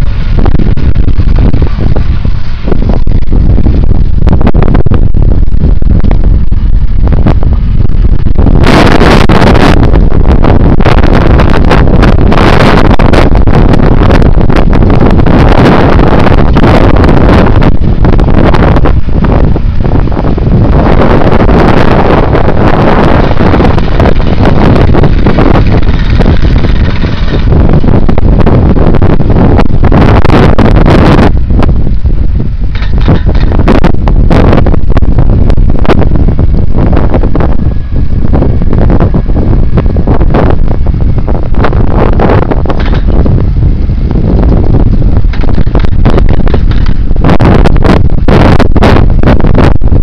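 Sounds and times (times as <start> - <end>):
wind buffeting microphone: 0.0 - 50.0
tractor and baler machinery: 8.5 - 31.3, 32.1 - 34.7, 38.2 - 43.4, 44.0 - 48.6.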